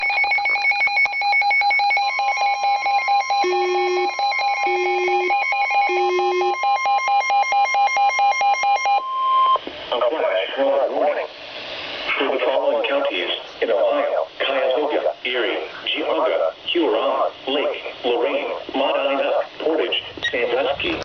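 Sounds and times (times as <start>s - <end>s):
steady warning alarm tone: 0.0s - 9.6s.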